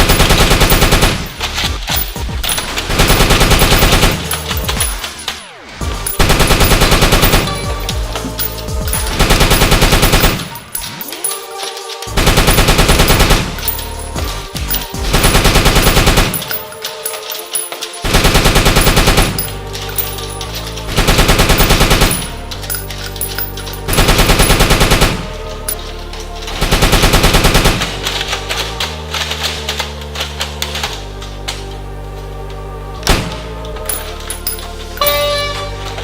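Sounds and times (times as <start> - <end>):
automatic gunfire bursts: 0.0 - 5.4, 6.0 - 11.6, 12.2 - 25.8, 26.6 - 28.8
music: 0.0 - 36.0.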